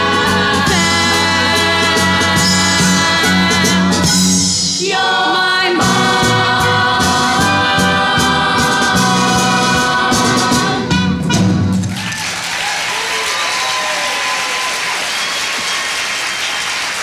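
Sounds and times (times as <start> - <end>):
singers with accompaniment: 0.0 - 11.8
audience applause: 11.8 - 17.0.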